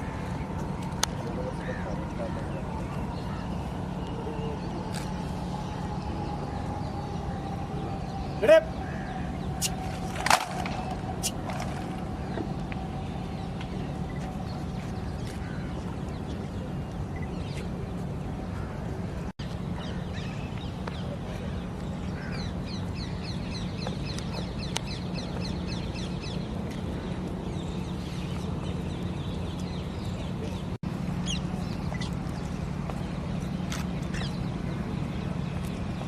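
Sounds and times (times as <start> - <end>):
low hum: 0.0 - 36.0
outdoor background rumble: 0.0 - 36.0
small birds chirping: 19.4 - 36.0.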